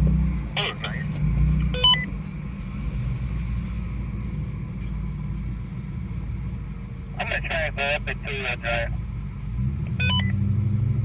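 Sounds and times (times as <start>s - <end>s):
truck engine rumbling: 0.0s - 11.0s
electronic beep tones: 1.8s - 2.1s, 10.0s - 10.4s.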